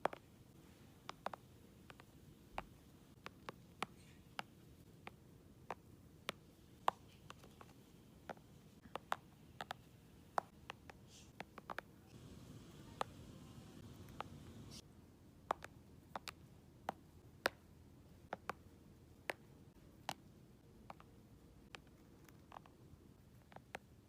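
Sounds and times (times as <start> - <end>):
faint room hiss: 0.0 - 24.0
light sharp taps and clicks: 1.0 - 14.8.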